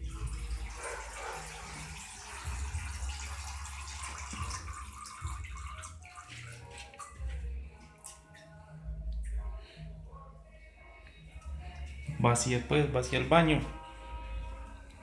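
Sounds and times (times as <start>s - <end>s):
water running from tap: 0.0s - 7.4s.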